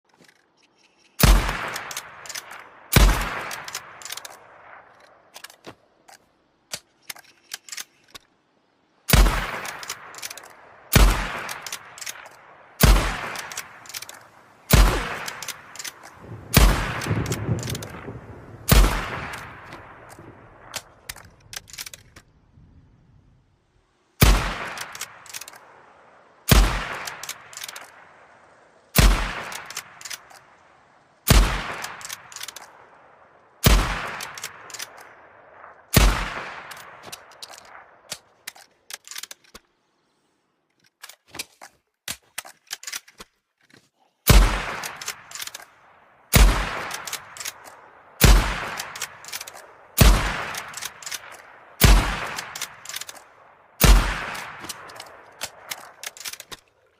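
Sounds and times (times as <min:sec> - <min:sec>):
light metallic clicks: 0:00.1 - 0:08.4, 0:09.1 - 0:10.6, 0:13.2 - 0:22.3, 0:26.9 - 0:28.1, 0:29.0 - 0:30.6, 0:31.3 - 0:32.8, 0:34.0 - 0:35.2, 0:44.5 - 0:53.4, 0:54.2 - 0:56.8
rifle shots with echo: 0:01.2 - 0:05.3, 0:09.1 - 0:22.0, 0:24.2 - 0:38.3, 0:44.3 - 0:45.7, 0:46.3 - 0:56.5.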